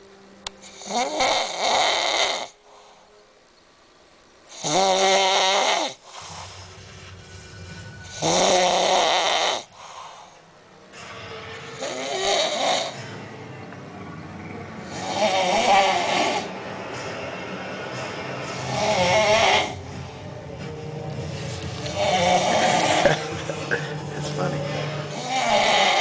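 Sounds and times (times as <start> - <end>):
man snoring loudly: 0.7 - 2.6, 4.5 - 6.5, 8.1 - 9.7, 11.8 - 13.0, 14.8 - 16.5, 18.5 - 19.8, 21.8 - 23.4, 24.7 - 26.0
quiet breathing: 2.5 - 3.5, 6.0 - 8.2, 9.6 - 12.3, 23.8 - 25.3.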